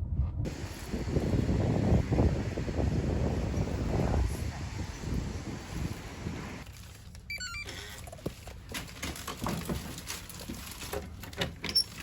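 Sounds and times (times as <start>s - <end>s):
beeps stepping down in pitch: 7.3s - 7.7s.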